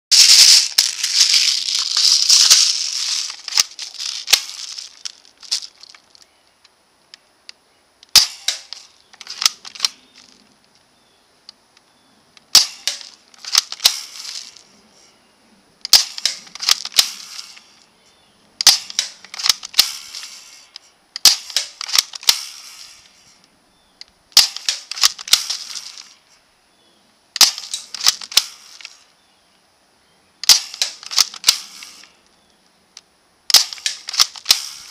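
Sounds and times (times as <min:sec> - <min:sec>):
gun clicking and rattle: 0:00.1 - 0:06.3, 0:08.0 - 0:10.4, 0:12.5 - 0:14.7, 0:15.8 - 0:17.8, 0:18.6 - 0:23.2, 0:24.4 - 0:26.2, 0:27.4 - 0:29.0, 0:30.4 - 0:32.2, 0:33.5 - 0:34.9
airsoft rifle shot snap: 0:08.1 - 0:08.8.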